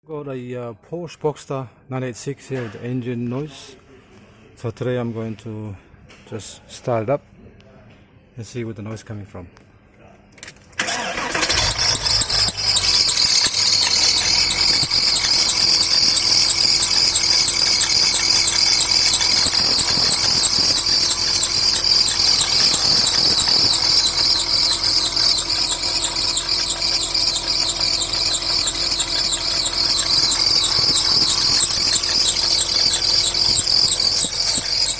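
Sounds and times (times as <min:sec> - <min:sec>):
car engine starting and idling: 0:10.8 - 0:34.9
high-pitched pulsing squeal: 0:11.2 - 0:34.9.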